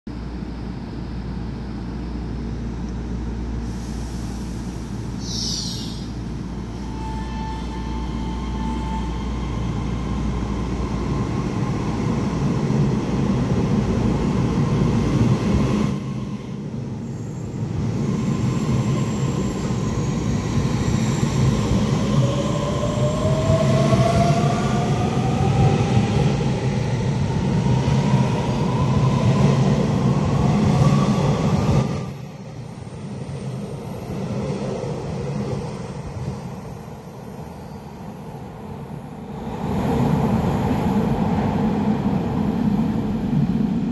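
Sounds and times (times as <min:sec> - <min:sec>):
electric train accelerating: 0:04.0 - 0:43.9
sharp high whistle: 0:05.2 - 0:10.6, 0:35.7 - 0:38.7.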